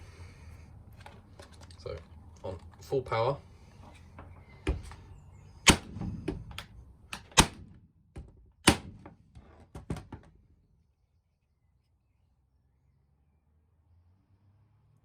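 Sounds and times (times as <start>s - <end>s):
nail gun clacks: 5.7s - 6.0s, 7.1s - 7.7s, 8.6s - 9.2s.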